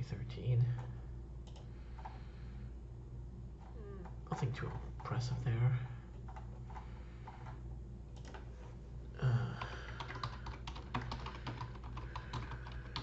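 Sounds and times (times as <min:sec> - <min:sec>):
low steady hum: 0:00.0 - 0:13.0
keyboard typing clicks: 0:00.8 - 0:02.2, 0:06.2 - 0:08.4, 0:09.6 - 0:13.0.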